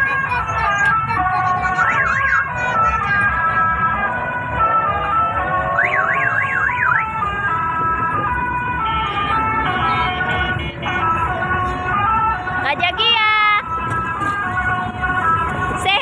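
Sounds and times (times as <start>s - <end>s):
horn playing a tune: 7.2s - 16.0s.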